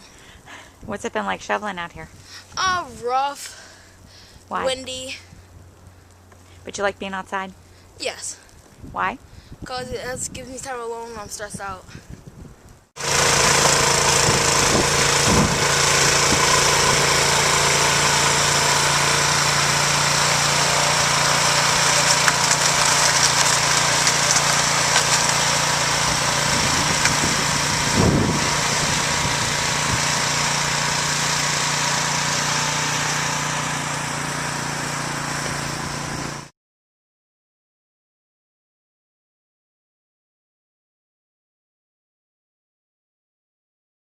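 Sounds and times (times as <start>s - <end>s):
small engine running: 13.0s - 36.5s.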